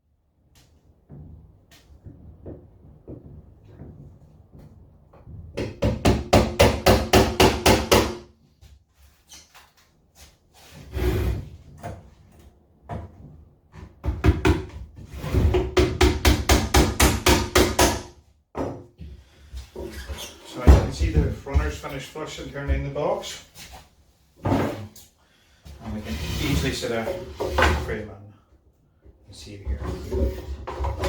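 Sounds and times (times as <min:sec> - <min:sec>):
hammer tapping nails into wood: 0:05.6 - 0:08.2, 0:15.8 - 0:18.7.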